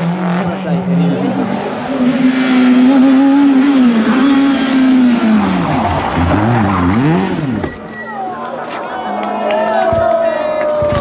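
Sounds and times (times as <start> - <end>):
rally car engine revving: 0.0 - 8.0.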